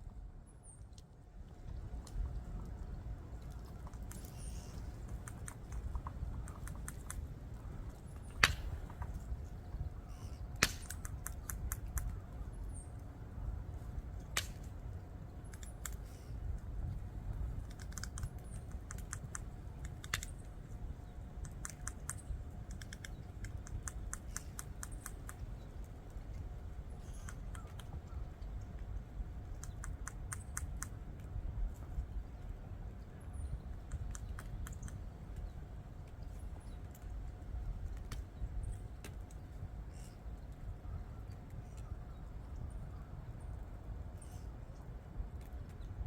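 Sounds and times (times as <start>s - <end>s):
campfire crackling: 4.9s - 9.4s
faint bird chirps: 38.3s - 44.9s.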